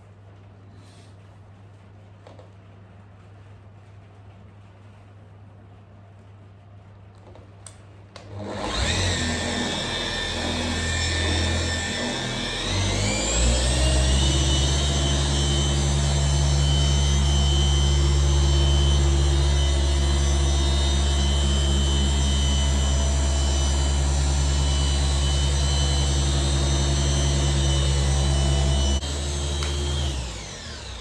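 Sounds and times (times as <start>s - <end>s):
machine polisher running: 8.3s - 31.0s.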